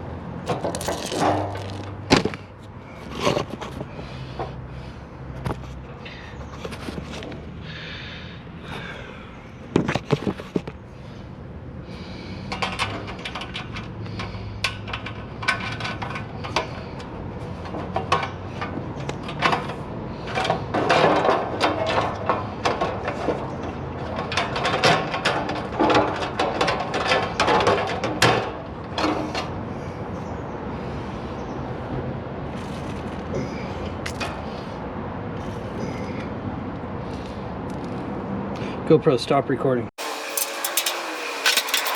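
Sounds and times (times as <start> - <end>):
parts knocking and clattering: 0.5 - 4.5, 9.7 - 10.8, 12.5 - 29.6, 40.0 - 41.9.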